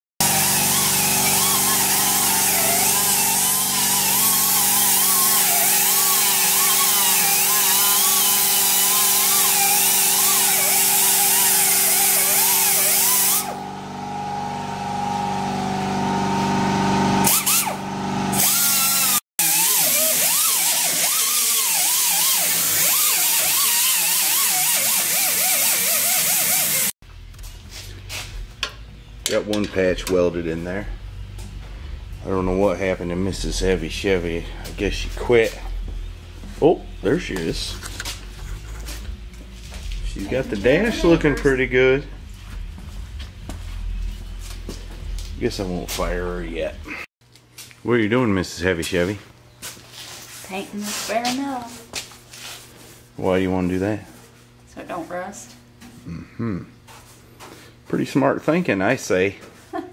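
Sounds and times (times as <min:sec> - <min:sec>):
sandblaster hissing: 0:00.2 - 0:13.6, 0:17.2 - 0:27.0
air compressor hum: 0:00.2 - 0:47.1.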